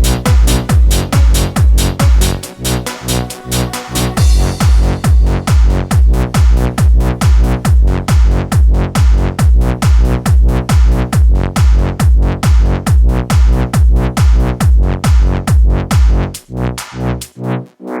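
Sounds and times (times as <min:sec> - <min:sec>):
sustained synth chord: 0:00.0 - 0:07.1
heavy kick drum: 0:00.0 - 0:16.5.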